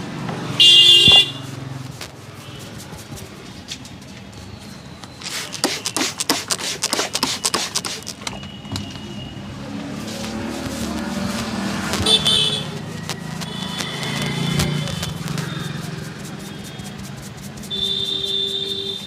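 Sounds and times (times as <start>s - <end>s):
vehicle horn: 0.6s - 1.5s, 11.9s - 12.8s, 13.4s - 15.6s, 17.7s - 19.0s.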